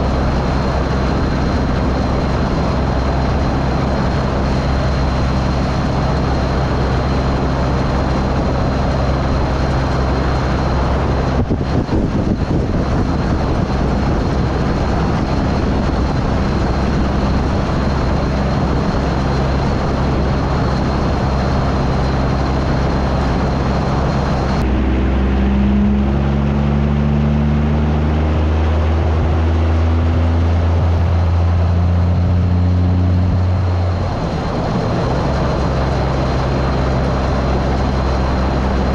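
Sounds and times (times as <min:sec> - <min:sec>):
road noise: 0:00.0 - 0:38.9
truck engine: 0:00.0 - 0:38.9
wind noise: 0:00.0 - 0:38.9.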